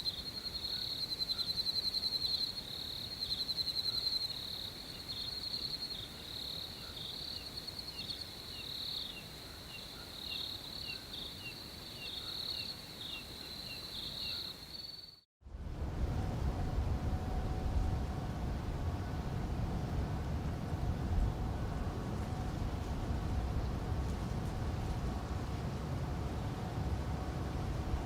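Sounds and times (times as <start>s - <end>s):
soft short insect call: 0.0s - 15.2s
crickets chirping in trills: 0.0s - 15.3s
faint steady hum: 0.0s - 28.0s
low rumbling noise: 15.4s - 28.0s.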